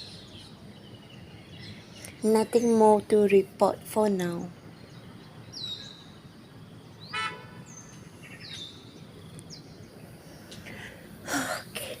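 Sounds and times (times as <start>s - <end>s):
birds whistling: 4.4s - 10.8s.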